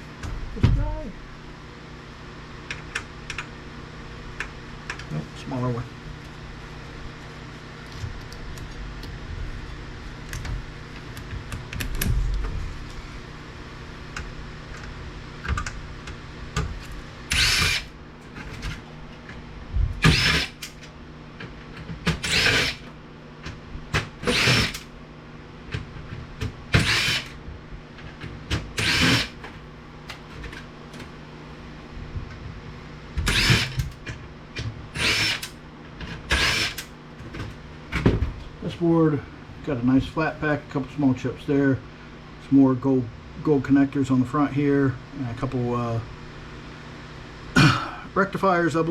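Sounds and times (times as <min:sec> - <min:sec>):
drill-driver backing out screws: 0:17.3 - 0:17.8, 0:20.0 - 0:20.6, 0:22.2 - 0:22.8, 0:24.2 - 0:24.8, 0:26.8 - 0:27.3, 0:28.8 - 0:29.4, 0:33.2 - 0:33.9, 0:35.0 - 0:35.5, 0:36.3 - 0:36.8.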